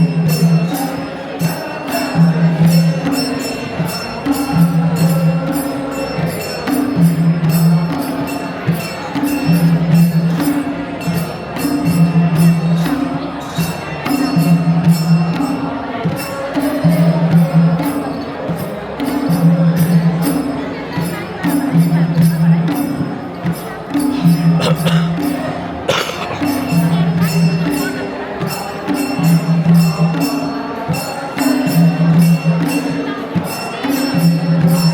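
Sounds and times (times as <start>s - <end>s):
voices singing: 0.0s - 22.8s.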